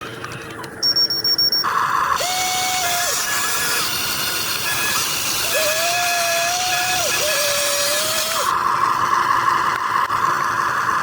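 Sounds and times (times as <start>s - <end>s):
small electric motor whining: 1.7s - 8.6s.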